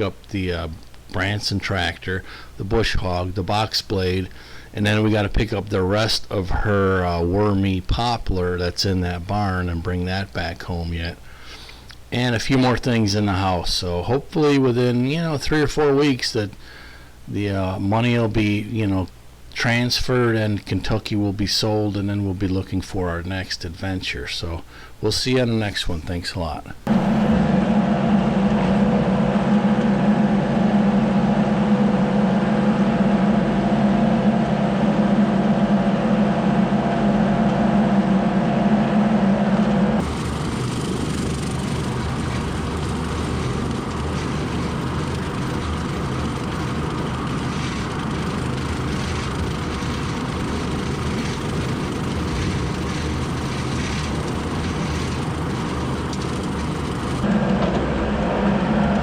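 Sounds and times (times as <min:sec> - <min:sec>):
rushing road noise: 0:26.9 - 0:27.3
vehicle driving drone: 0:26.9 - 0:59.0.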